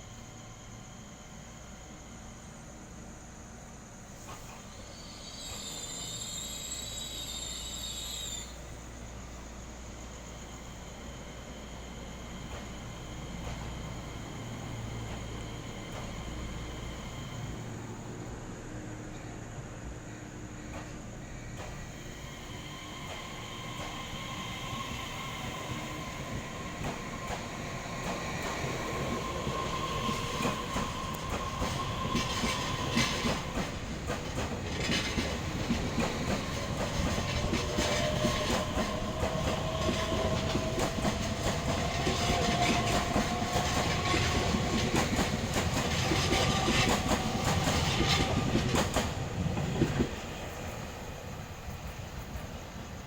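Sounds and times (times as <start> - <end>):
electric train whine rising: 0.0 - 51.6
wheels clicking over rail joints: 26.6 - 50.2.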